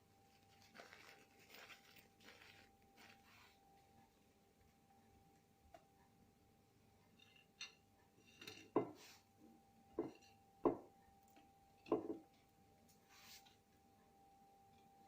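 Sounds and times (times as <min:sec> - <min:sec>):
faint steady hum: 0:00.0 - 0:15.0
kitchenware knocking and clinking: 0:07.2 - 0:09.0, 0:09.9 - 0:10.9, 0:11.8 - 0:12.3.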